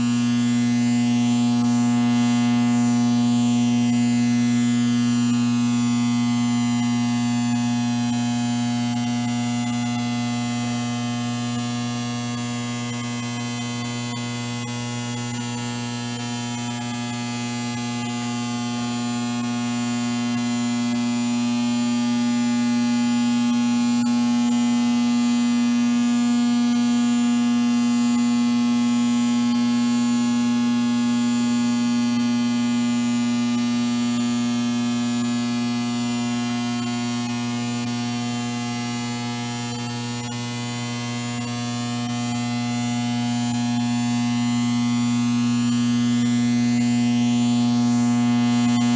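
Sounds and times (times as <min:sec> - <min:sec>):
electrical buzz: 0:46.8 - 0:48.9.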